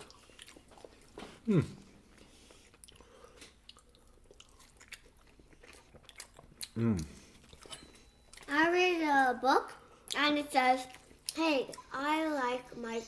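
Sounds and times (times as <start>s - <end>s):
chewing and biting: 0.0s - 1.5s, 2.1s - 8.5s.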